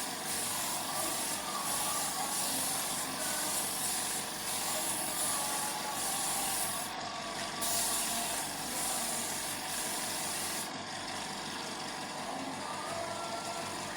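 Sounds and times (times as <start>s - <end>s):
spray gun hissing: 0.0s - 6.9s, 7.6s - 10.7s.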